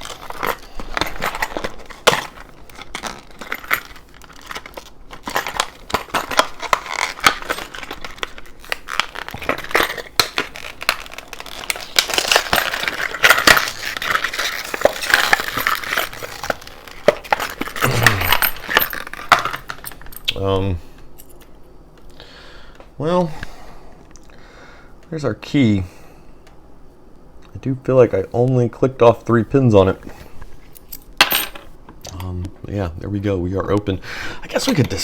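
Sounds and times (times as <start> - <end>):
plastic packaging crinkling and tearing: 0.0 - 19.8
metal keys clinking: 0.0 - 20.3.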